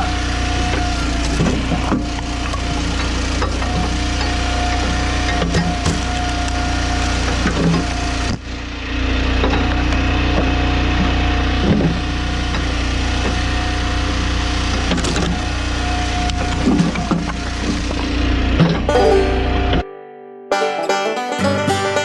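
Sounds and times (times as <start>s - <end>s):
log splitter engine running: 0.0s - 10.0s.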